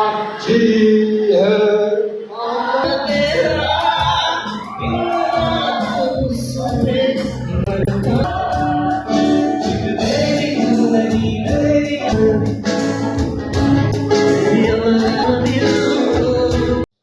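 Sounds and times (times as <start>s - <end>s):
voices singing together: 0.0s - 16.9s
plucked string instrument: 3.0s - 16.9s.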